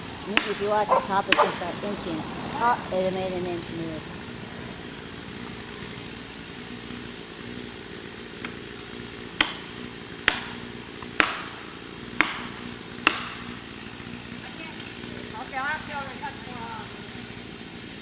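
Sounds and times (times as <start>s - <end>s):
hammer striking felling wedges: 0.0s - 2.2s, 8.4s - 14.0s
small engine idling: 0.0s - 18.0s.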